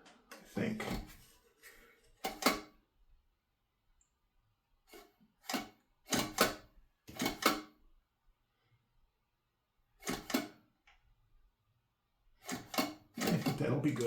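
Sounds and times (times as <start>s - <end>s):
sharp plastic clicks: 5.4s - 7.8s.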